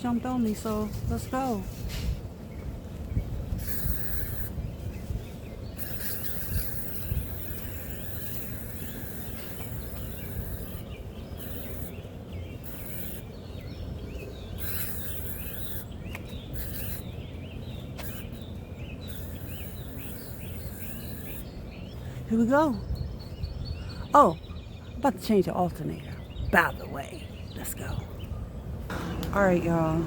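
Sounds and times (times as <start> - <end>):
birds chirping: 0.0 - 30.0
steady low rumble: 27.2 - 30.0.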